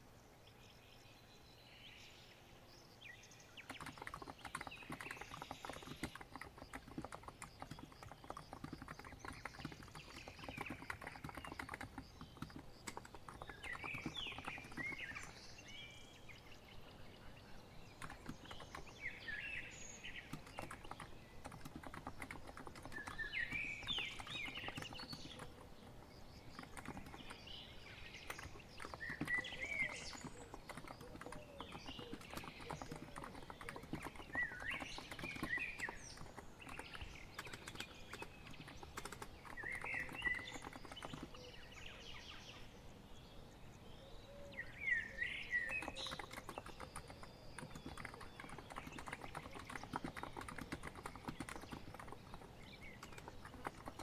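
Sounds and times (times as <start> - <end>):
bird singing: 0.0 - 54.0
keyboard typing: 3.6 - 15.4, 18.0 - 19.0, 20.2 - 41.5, 45.6 - 54.0.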